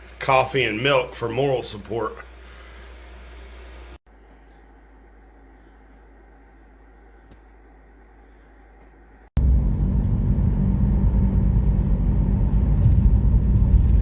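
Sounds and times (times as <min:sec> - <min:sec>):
faint room hum: 0:00.0 - 0:09.4
car driving heard from inside: 0:09.4 - 0:14.0.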